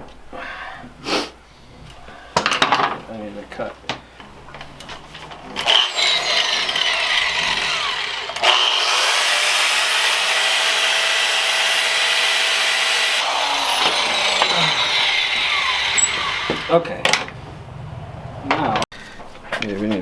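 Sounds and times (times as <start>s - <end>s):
power tool grinding through chain: 5.6s - 17.4s.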